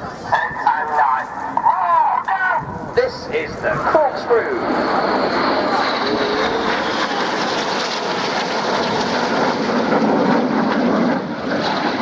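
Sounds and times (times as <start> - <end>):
loud jet engine noise: 0.0 - 12.0.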